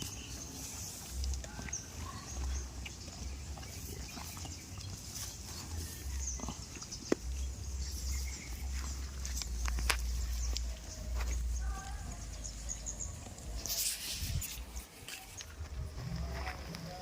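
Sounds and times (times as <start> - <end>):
goats moving and feeding: 0.0 - 17.0.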